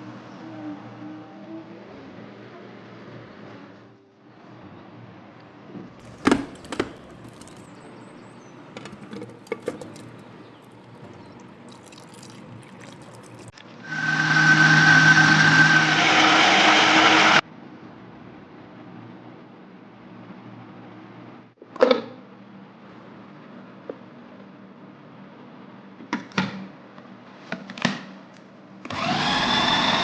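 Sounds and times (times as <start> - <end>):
food processor motor running: 28.8 - 30.0.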